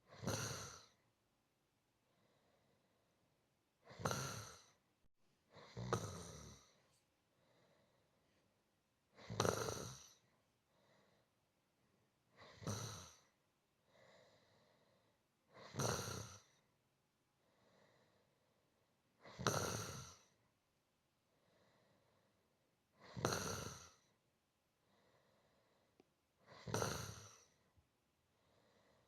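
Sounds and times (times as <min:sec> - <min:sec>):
person snoring softly: 0:00.0 - 0:01.0, 0:03.8 - 0:04.8, 0:05.5 - 0:08.2, 0:09.1 - 0:11.3, 0:12.3 - 0:16.7, 0:19.2 - 0:20.4, 0:21.4 - 0:24.2, 0:24.8 - 0:27.8
faint breaths: 0:02.0 - 0:03.2, 0:05.5 - 0:11.6, 0:12.2 - 0:16.7, 0:17.3 - 0:20.4, 0:21.2 - 0:23.2, 0:23.8 - 0:29.0.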